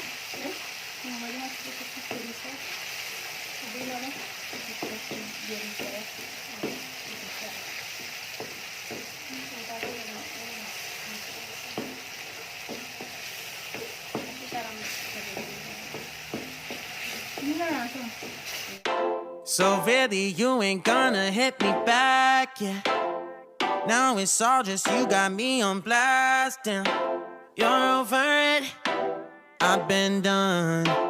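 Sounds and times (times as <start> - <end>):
food sizzling in a pan: 0.0 - 18.8
spatula scraping a pan: 11.6 - 18.8.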